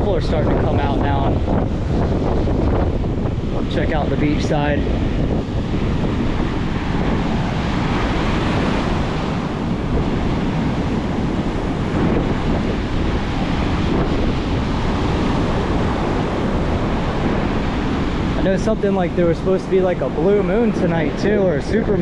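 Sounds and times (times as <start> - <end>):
wind buffeting microphone: 0.0 - 22.0
surf breaking: 6.8 - 21.4.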